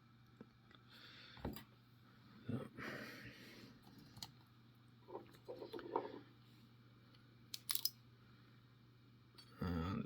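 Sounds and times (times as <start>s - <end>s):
clicks and taps of lock parts: 7.6s - 8.0s.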